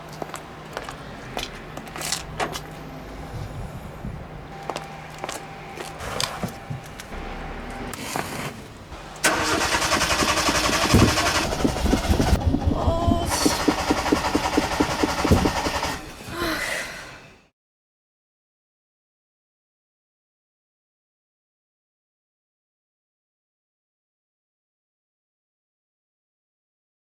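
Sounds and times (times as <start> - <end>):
starter cranking car engine: 9.0 - 16.4.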